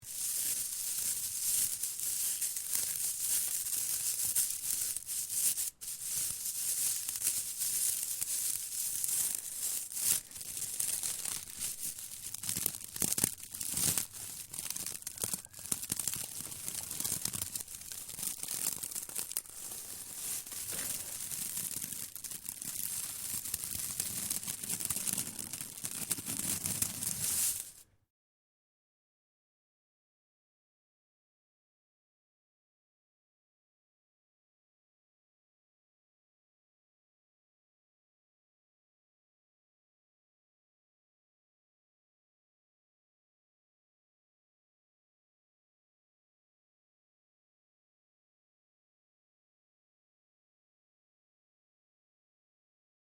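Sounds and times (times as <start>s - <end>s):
broom bristles crackling: 0.0s - 27.8s.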